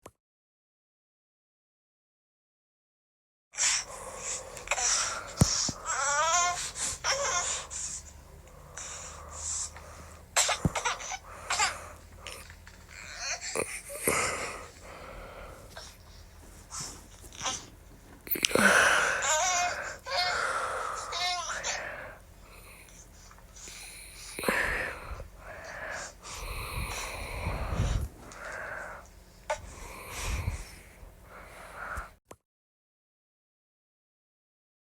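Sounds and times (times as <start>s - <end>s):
baby huffing breaths: 3.6s - 32.2s
baby gasping and squealing: 4.7s - 8.0s, 10.4s - 13.6s, 18.4s - 22.0s
baby half-laughing: 4.7s - 8.0s, 10.4s - 14.0s, 18.5s - 21.8s
microphone rumbles: 26.5s - 28.3s.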